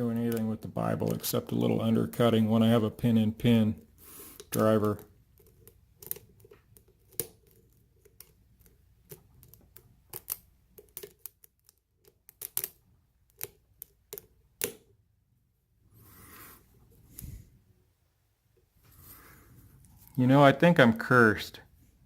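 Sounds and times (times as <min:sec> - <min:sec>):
lock picking metal clicks: 0:08.2 - 0:14.8.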